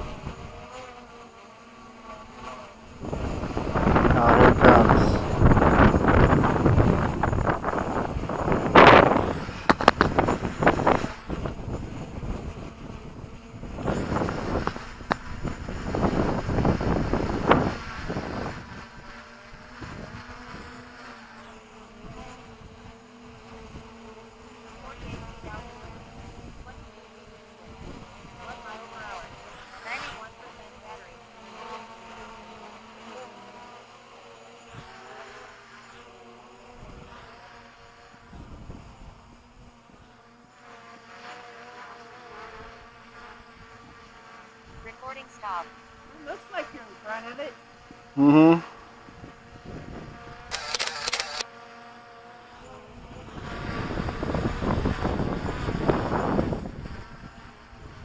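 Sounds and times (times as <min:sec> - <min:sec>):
wind rumble on microphone: 0:00.0 - 0:00.7, 0:02.9 - 0:20.8, 0:22.0 - 0:24.0, 0:24.7 - 0:26.9, 0:27.6 - 0:30.2, 0:36.8 - 0:37.3, 0:38.2 - 0:40.1, 0:49.0 - 0:50.6, 0:52.7 - 0:58.0
drone propellers buzzing: 0:00.0 - 0:58.0.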